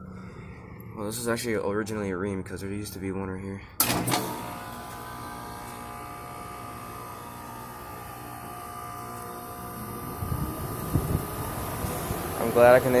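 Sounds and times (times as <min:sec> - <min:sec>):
air conditioner unit humming: 0:00.0 - 0:13.0
whining tones: 0:03.8 - 0:13.0.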